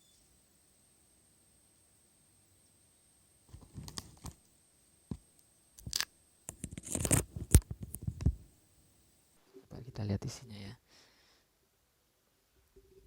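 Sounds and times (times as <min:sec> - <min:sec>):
packaging tearing and crinkling: 0:05.8 - 0:08.1.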